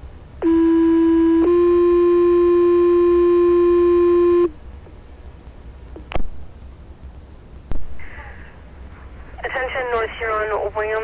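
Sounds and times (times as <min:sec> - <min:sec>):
two-tone pager alert tones: 0:00.4 - 0:04.5.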